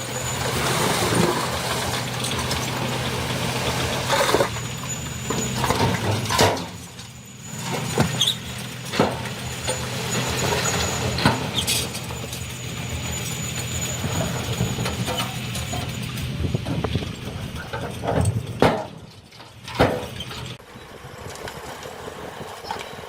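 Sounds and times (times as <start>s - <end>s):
heavy machine engine running: 0.0s - 23.0s
metallic clanks and knocks: 14.1s - 20.6s.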